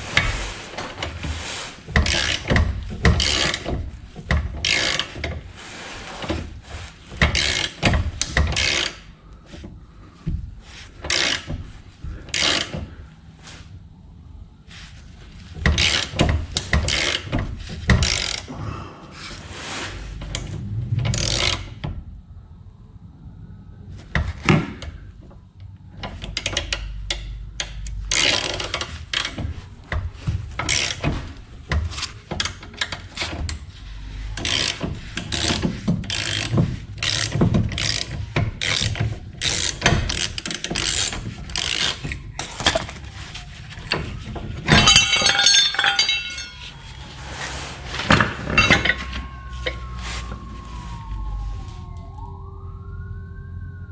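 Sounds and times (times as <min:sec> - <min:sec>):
metal knocks: 0:44.6 - 0:46.9, 0:48.1 - 0:50.0.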